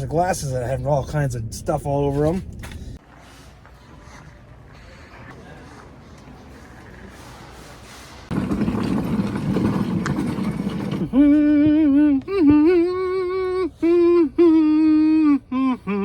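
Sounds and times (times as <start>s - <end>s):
man humming: 11.1s - 16.0s.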